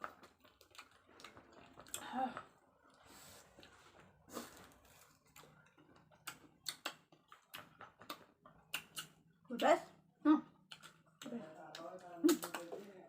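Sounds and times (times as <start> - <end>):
eating clicks and smacks: 0.0 - 2.1, 5.3 - 9.4, 10.6 - 12.8.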